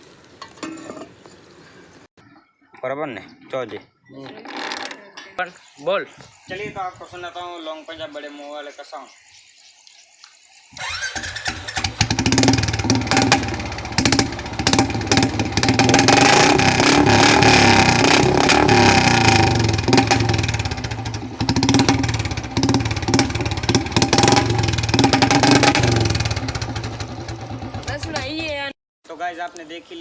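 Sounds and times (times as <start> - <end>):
motorcycle engine revving: 10.8 - 28.7.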